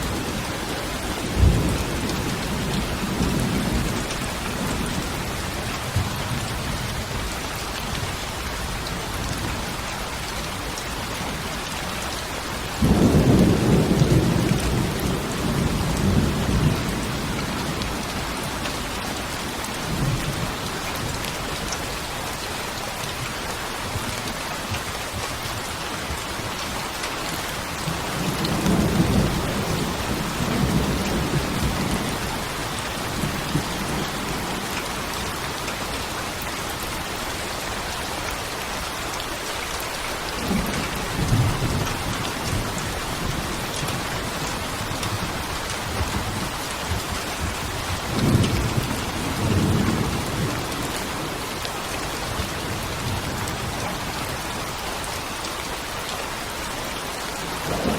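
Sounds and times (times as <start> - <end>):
low thunder rumbling: 0.0 - 7.3, 12.8 - 21.2, 27.8 - 35.4, 57.5 - 57.9
heavy rain: 0.0 - 57.9.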